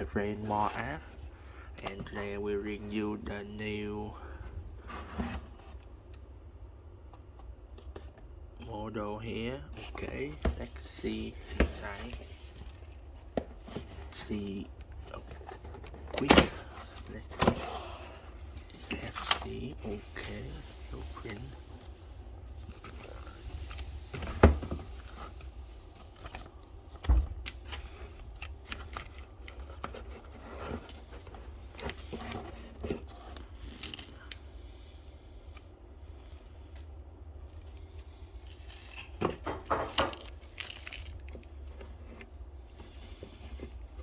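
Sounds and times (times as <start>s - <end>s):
packaging rustling and tearing: 24.9s - 44.0s.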